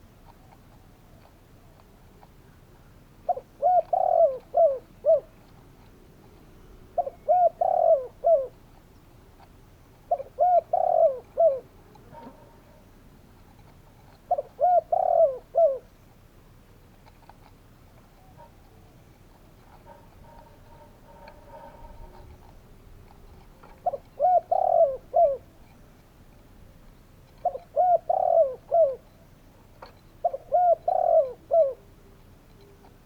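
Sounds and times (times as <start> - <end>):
dove cooing: 3.2 - 8.9, 9.5 - 12.9, 13.8 - 15.9, 18.1 - 26.0, 27.3 - 29.2, 29.8 - 33.0.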